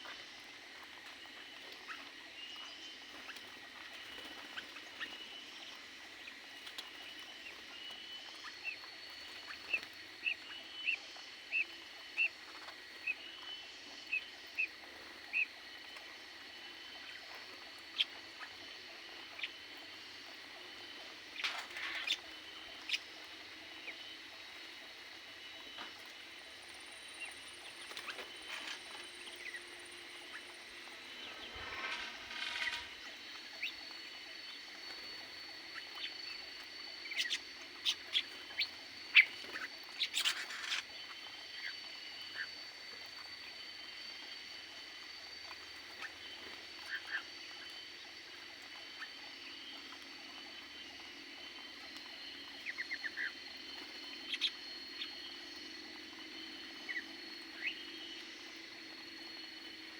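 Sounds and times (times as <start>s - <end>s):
birds chirping: 17.9s - 41.7s.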